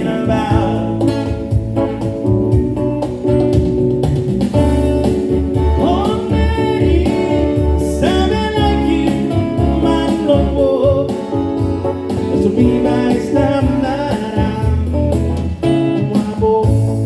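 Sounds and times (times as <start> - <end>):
person singing: 0.0 - 1.5, 5.6 - 17.0
live band playing: 0.0 - 17.0.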